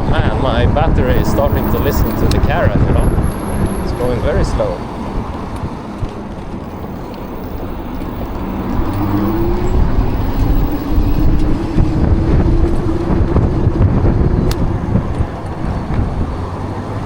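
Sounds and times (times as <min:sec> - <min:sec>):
wind and road noise: 0:00.0 - 0:17.0
electric motor hum: 0:06.6 - 0:16.6.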